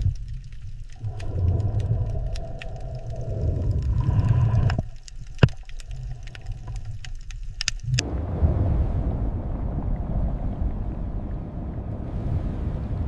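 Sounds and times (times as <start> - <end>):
sharp underwater clicks: 0.0 - 8.0
low underwater rumble: 0.0 - 13.0.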